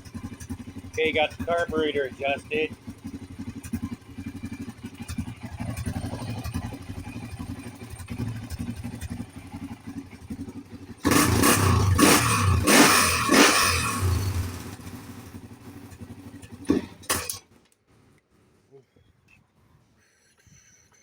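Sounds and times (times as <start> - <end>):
engine idling and revving: 0.0 - 17.6.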